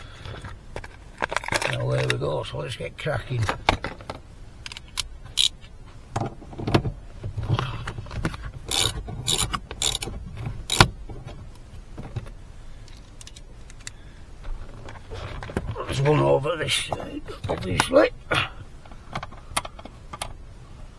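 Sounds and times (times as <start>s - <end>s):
metallic tool clicks and clatter: 4.7s - 5.6s.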